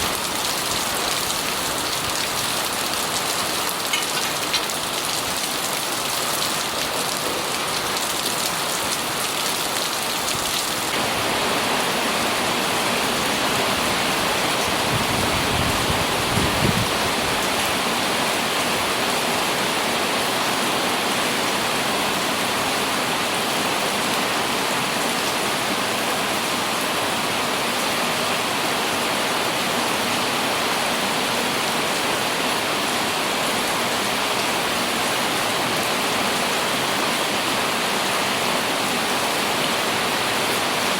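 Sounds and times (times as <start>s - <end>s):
rain pattering on an umbrella: 0.0s - 12.3s.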